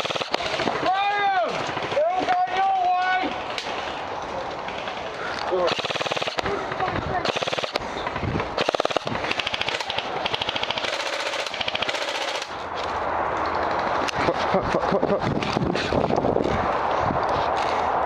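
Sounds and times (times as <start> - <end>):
airsoft guns firing: 0.0 - 2.2, 4.8 - 7.8, 8.6 - 12.5.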